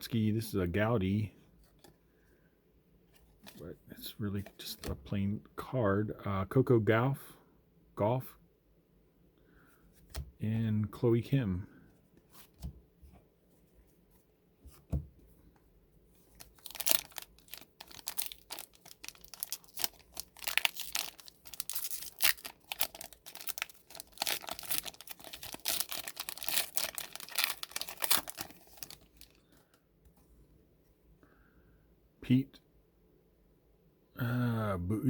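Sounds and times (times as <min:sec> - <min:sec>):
foil wrapper tearing and crinkling: 0:16.4 - 0:29.4.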